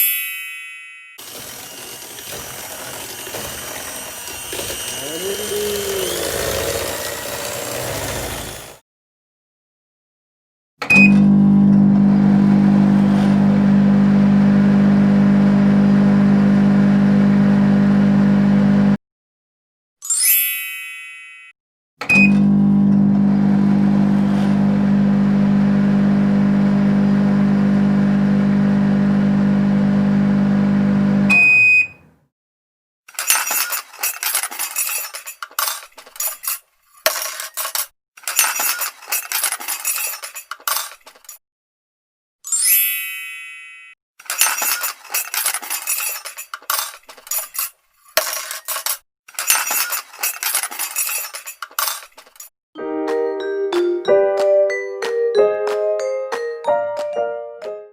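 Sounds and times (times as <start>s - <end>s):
microwave oven humming: 11.2s - 19.0s, 22.2s - 31.3s
short beep: 31.3s - 32.0s.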